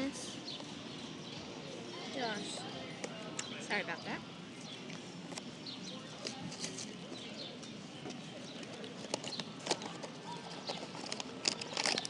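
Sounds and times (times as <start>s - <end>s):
packaging rustling and clicking: 8.9s - 12.0s
packaging crinkling: 9.1s - 12.0s.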